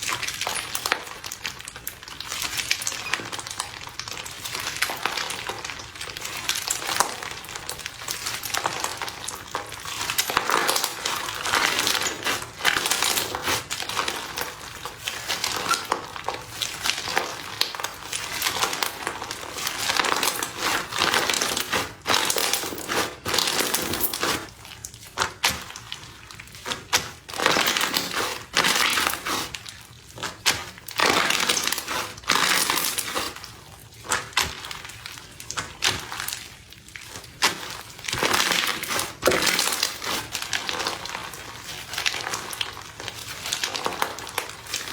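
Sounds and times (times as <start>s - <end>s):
slime crackling and popping: 0.0s - 44.9s.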